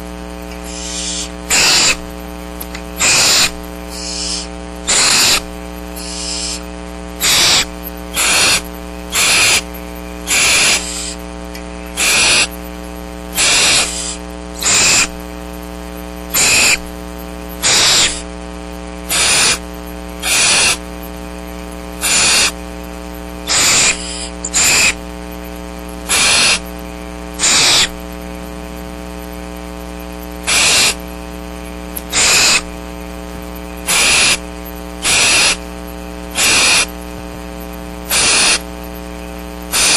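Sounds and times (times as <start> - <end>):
steady electrical hum: 0.0 - 39.9
owlets hissing begging calls: 0.6 - 2.1, 3.0 - 11.2, 11.8 - 12.5, 13.3 - 15.2, 16.3 - 16.9, 17.6 - 18.3, 19.1 - 19.6, 20.2 - 20.8, 22.0 - 22.6, 23.5 - 25.0, 26.1 - 26.7, 27.4 - 28.0, 30.5 - 31.0, 32.1 - 32.8, 33.7 - 35.6, 36.4 - 37.0, 38.1 - 38.7.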